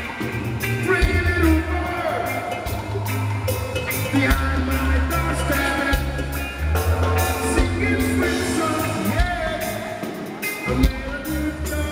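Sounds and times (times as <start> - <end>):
live rock band playing: 0.0 - 11.9
person singing: 3.9 - 11.9.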